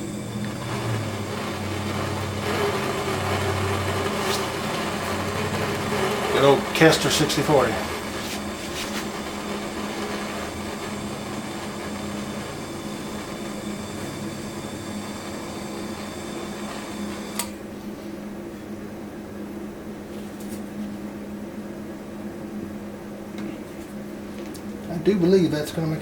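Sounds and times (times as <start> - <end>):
gas torch hissing: 0.0 - 17.9
low hum: 0.0 - 20.1.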